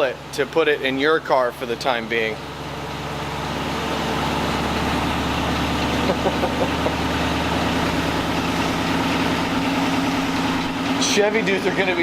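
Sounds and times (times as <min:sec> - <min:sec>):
race car engine idling: 0:00.1 - 0:12.0.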